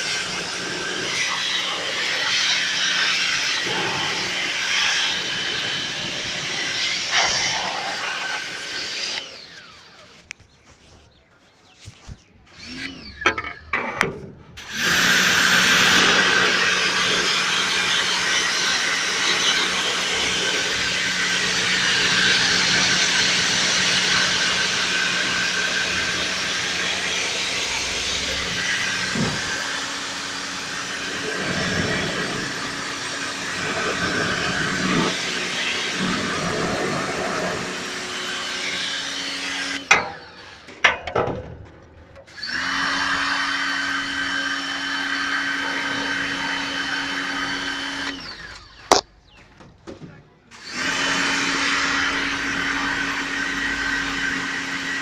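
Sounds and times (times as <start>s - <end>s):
motor machine humming and hissing: 0.0s - 10.2s, 14.6s - 39.9s.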